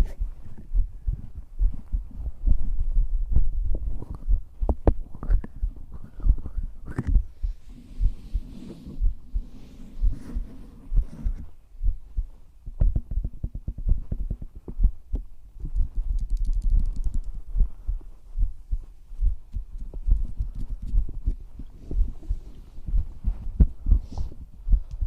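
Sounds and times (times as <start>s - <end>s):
heartbeat low double thumps: 0.0s - 25.0s
quick small clicks: 15.7s - 17.4s.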